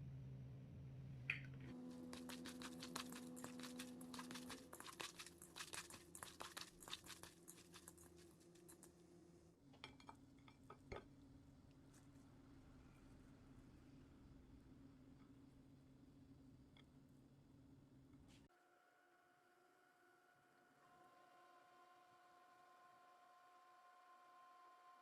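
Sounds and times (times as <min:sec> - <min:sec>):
faint steady hum: 0:00.0 - 0:25.0
food crunching and crinkling: 0:01.8 - 0:09.0.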